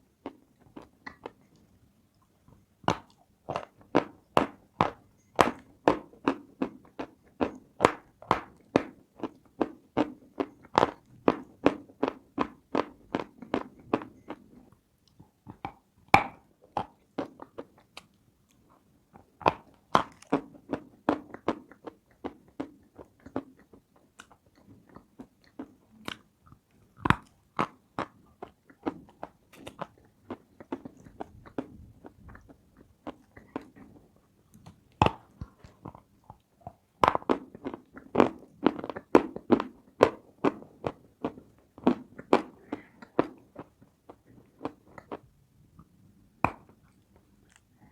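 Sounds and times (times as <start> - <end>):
crunchy chewing: 19.4 - 45.2, 46.8 - 47.9.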